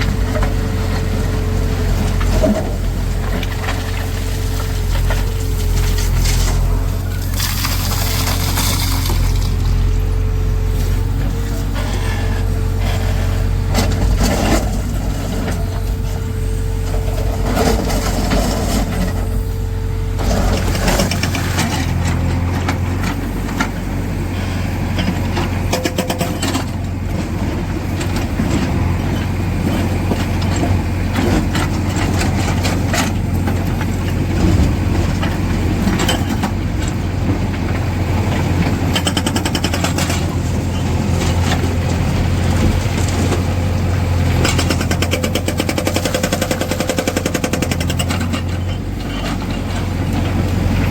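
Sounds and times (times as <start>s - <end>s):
diesel engine running under load: 0.0s - 50.9s
hydraulic rock breaker hammering: 25.6s - 26.9s, 38.2s - 43.5s, 44.2s - 49.6s.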